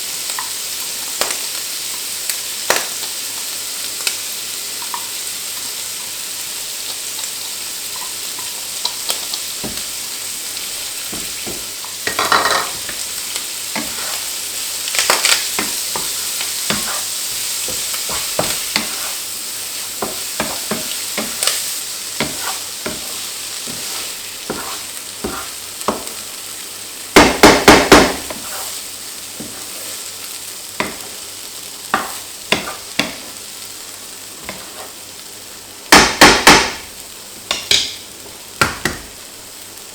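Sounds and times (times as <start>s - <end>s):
food sizzling in hot oil: 0.0s - 39.9s
spatula knocking against a wok: 9.6s - 9.9s, 11.1s - 13.0s
spatula scraping a wok: 13.7s - 14.5s, 15.5s - 25.7s, 28.2s - 30.0s, 34.4s - 35.0s.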